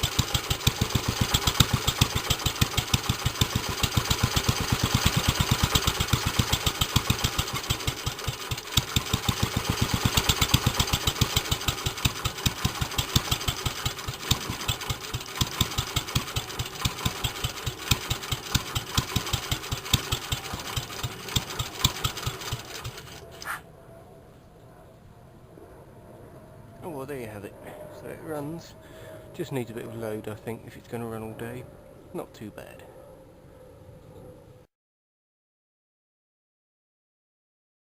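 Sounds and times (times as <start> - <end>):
stationary engine running: 0.0 - 23.4
engine puff: 0.0 - 23.6.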